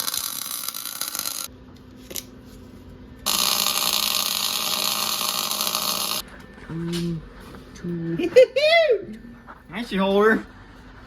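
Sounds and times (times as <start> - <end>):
welding arc crackling and hissing: 0.0 - 1.5, 3.3 - 6.2.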